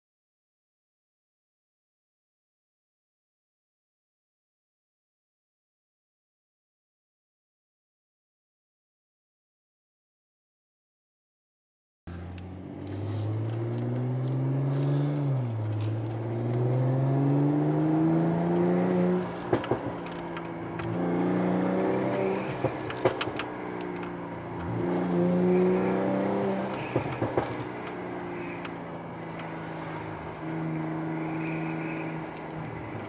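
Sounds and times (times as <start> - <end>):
car engine revving: 12.1 - 33.0
exhaust pops and crackles: 12.1 - 33.0.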